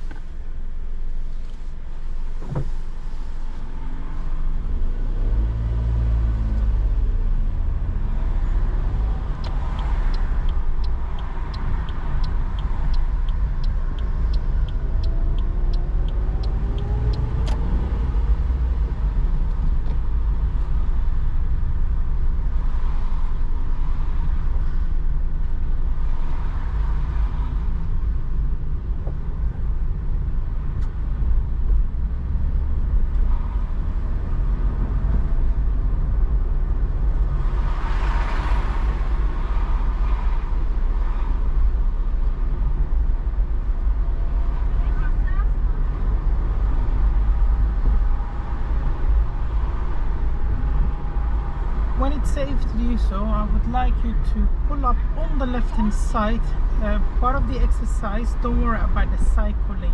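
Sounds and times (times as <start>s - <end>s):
road and engine rumble: 0.0s - 59.9s
regular ticking: 8.8s - 18.1s.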